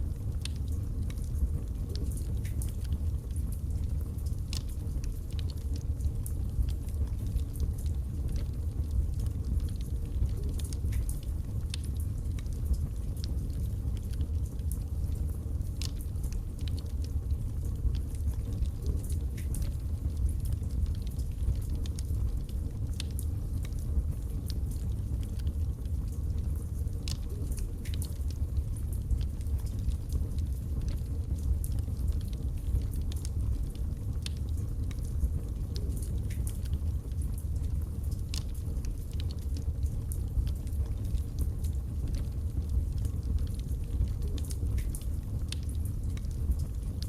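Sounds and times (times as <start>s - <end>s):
fire rumbling: 0.0s - 47.0s
wood crackling and popping: 0.0s - 47.0s.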